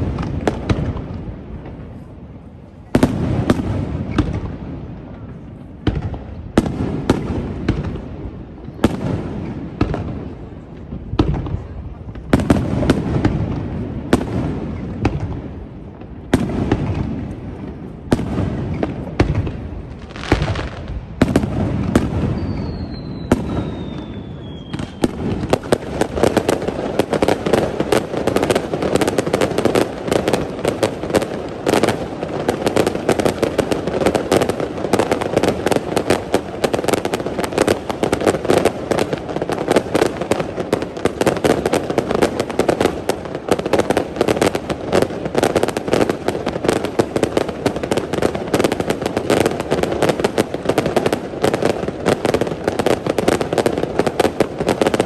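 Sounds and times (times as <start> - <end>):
rapid firework bangs and crackles: 0.0 - 55.0
firework shells booming: 2.9 - 55.0
descending firework whistle: 21.8 - 26.1.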